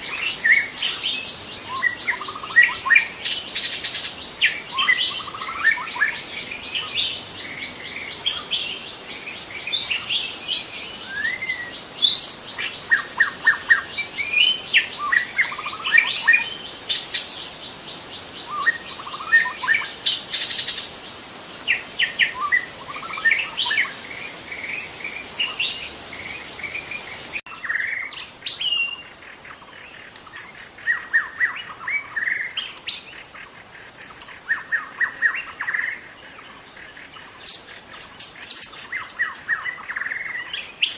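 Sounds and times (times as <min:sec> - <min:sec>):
high insect drone: 0:00.0 - 0:27.4
bird singing whistles and trills: 0:00.0 - 0:29.0.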